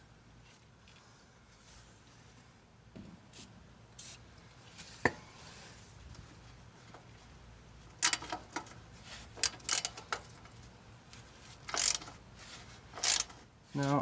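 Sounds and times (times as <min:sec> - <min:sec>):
wrench rasping on bolt: 0:09.4 - 0:10.6, 0:11.6 - 0:12.2, 0:13.0 - 0:13.4.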